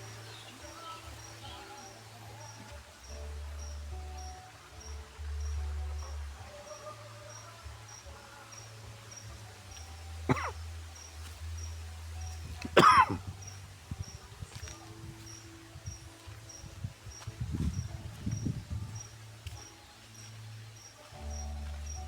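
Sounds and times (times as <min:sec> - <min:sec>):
insect chirping: 0:00.0 - 0:22.0.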